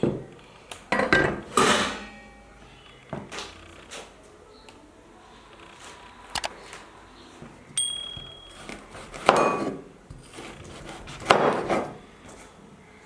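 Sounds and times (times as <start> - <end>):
kitchen utensils clattering: 0.9 - 2.6, 7.8 - 9.9
utensil clink with ring: 7.8 - 8.8.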